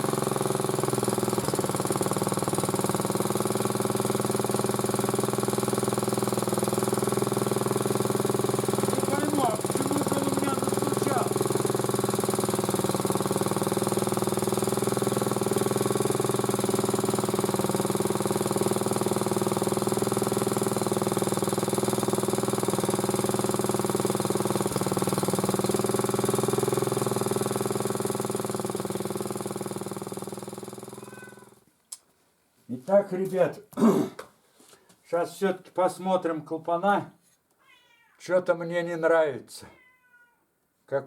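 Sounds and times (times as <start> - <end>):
small engine running: 0.0 - 31.6.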